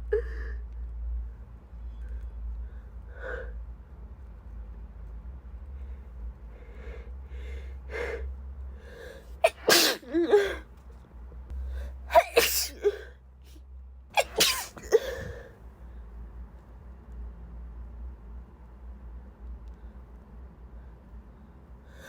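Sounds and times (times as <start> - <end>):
woman sneezing: 9.5 - 10.6, 12.1 - 13.0, 14.2 - 15.3.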